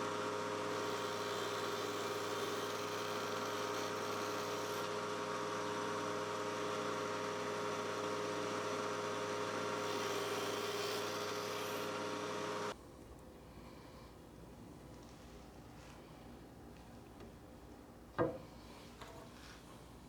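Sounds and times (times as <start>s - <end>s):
power tool motor humming: 0.7s - 5.0s, 9.7s - 12.7s.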